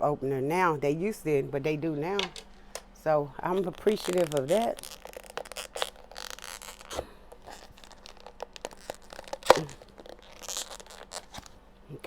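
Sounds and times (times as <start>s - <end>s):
food packaging rustling: 3.5s - 11.6s.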